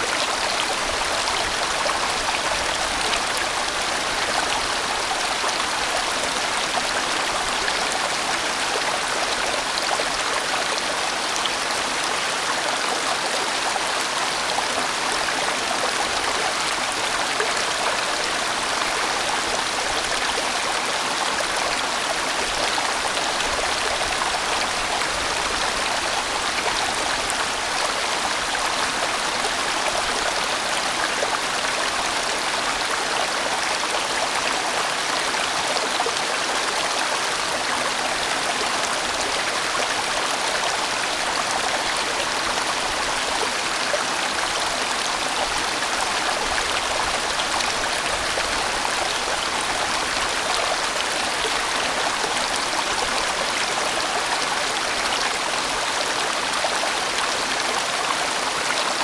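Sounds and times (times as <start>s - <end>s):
stream flowing: 0.0s - 59.0s.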